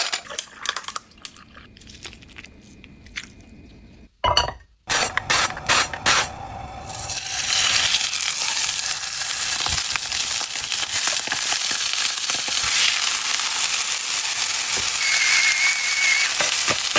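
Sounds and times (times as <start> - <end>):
food sizzling in a hot pan: 6.1 - 16.9.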